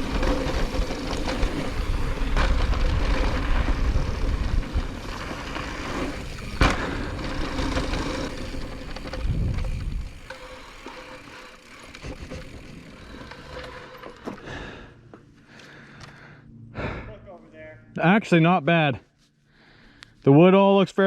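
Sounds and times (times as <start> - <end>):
wind rumbling on microphone: 0.0 - 10.3
bike rattling: 0.0 - 16.2
bike tyre noise: 0.0 - 16.9.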